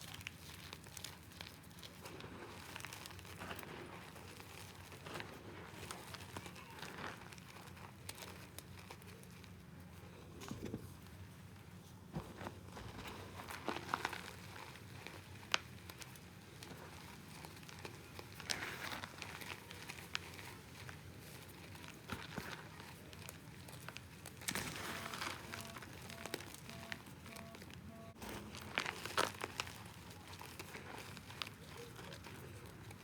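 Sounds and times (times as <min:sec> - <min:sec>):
gym chalk crunching and crumbling: 0:12.3 - 0:33.0.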